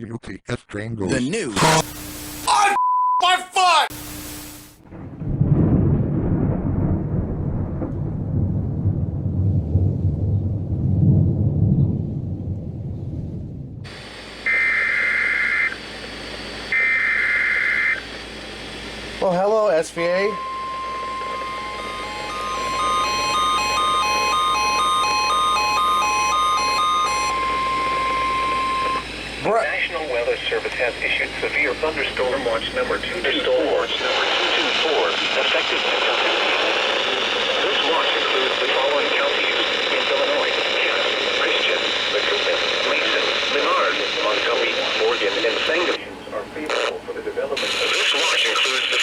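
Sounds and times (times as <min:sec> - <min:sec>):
rolling thunder rumble: 0:04.8 - 0:13.9
steady alarm tone: 0:13.9 - 0:33.0
alternating high and low beeps: 0:20.0 - 0:29.2.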